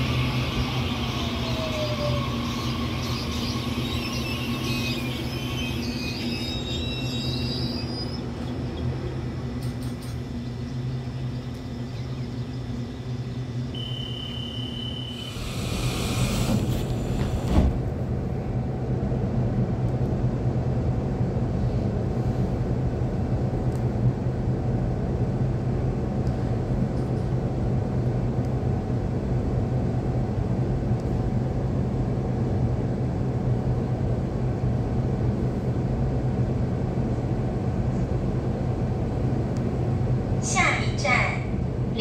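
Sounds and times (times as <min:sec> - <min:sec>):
electric train rumbling: 0:00.0 - 0:42.0.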